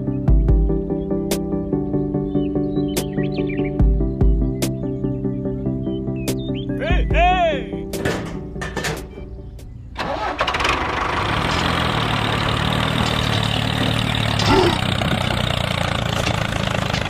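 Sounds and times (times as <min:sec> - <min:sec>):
small engine starting and running: 0:10.0 - 0:17.0.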